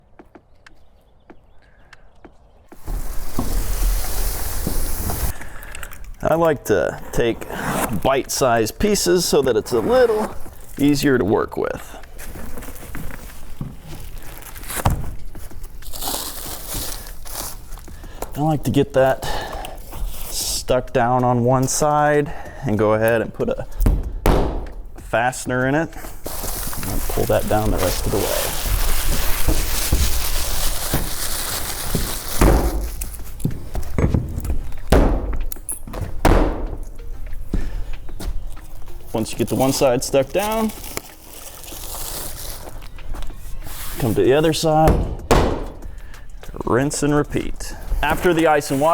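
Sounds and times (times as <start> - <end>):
roofing membrane rustling and crinkling: 2.4 - 48.9
dull thumps: 23.3 - 26.3, 27.5 - 38.7, 44.2 - 46.6
sharp thump: 23.8 - 24.9, 34.9 - 35.5, 36.2 - 36.9, 44.9 - 46.0.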